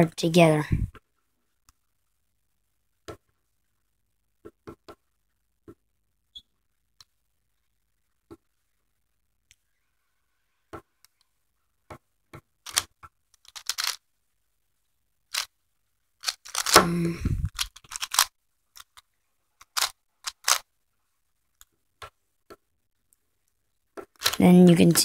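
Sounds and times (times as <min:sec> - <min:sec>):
plastic puzzle cube clicking: 0:12.6 - 0:14.0, 0:15.3 - 0:15.5, 0:16.2 - 0:16.8, 0:17.5 - 0:20.7, 0:24.0 - 0:24.4.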